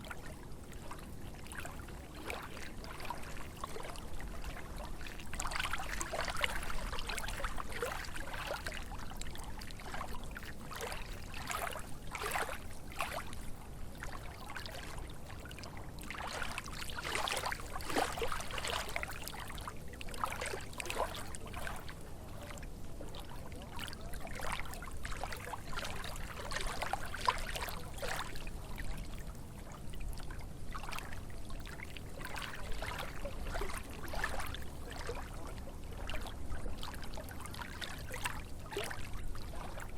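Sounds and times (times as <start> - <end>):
low steady rumble: 0.0 - 39.9
lake waves lapping: 16.1 - 19.5, 23.8 - 29.0, 30.7 - 39.9.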